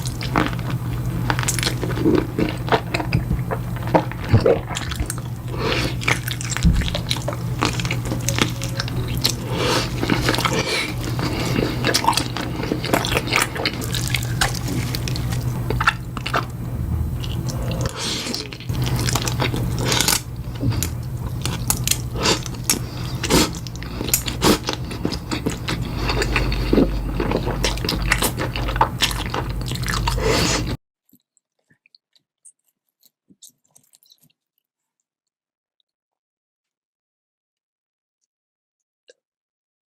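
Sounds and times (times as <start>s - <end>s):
steady low hum: 0.0s - 30.8s
person chewing crunchy food: 0.0s - 34.5s.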